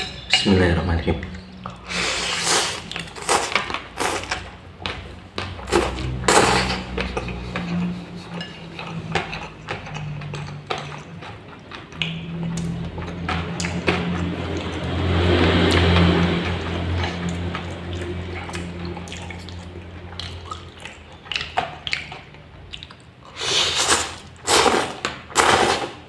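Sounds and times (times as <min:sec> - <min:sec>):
low steady hum: 0:02.8 - 0:23.3.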